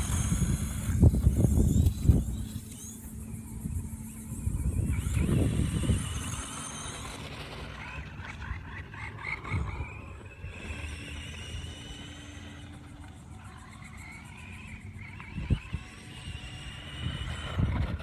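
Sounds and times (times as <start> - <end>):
toy car electric motor whining: 0.0 - 18.0.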